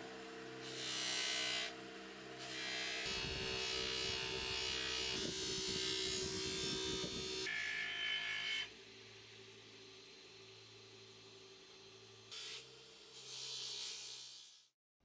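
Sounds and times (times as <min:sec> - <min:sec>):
power tool buzzing and rasping: 0:00.0 - 0:09.5, 0:12.3 - 0:14.6.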